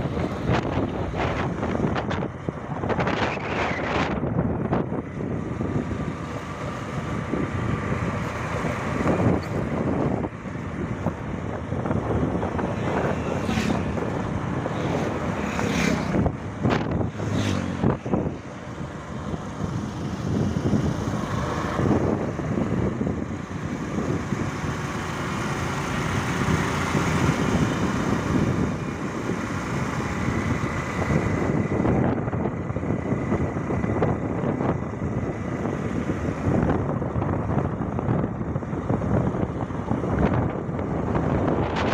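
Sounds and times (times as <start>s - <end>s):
vehicle running noise: 0.0s - 41.9s
wind buffeting microphone: 0.0s - 41.9s.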